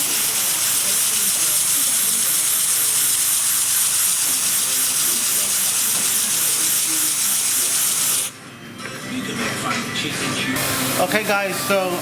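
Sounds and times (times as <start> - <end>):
model air engine hissing: 0.0 - 8.3.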